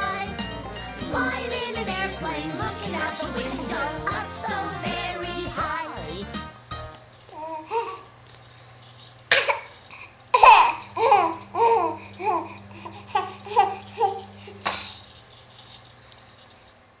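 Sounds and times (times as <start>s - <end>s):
young child laughing: 7.4s - 8.1s, 10.4s - 14.9s.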